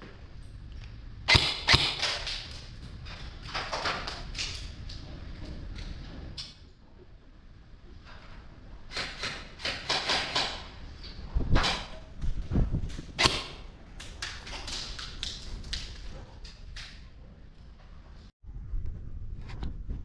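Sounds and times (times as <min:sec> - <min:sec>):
airsoft guns firing: 0:01.3 - 0:02.7, 0:13.2 - 0:15.4.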